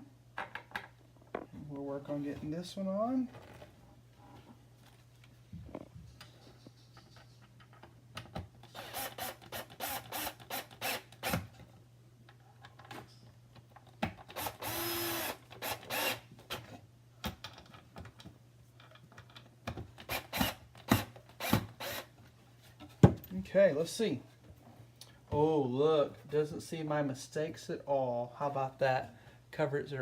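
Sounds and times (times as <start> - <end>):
cordless drill driving screw: 8.7 - 11.4, 14.3 - 16.2, 20.0 - 22.1.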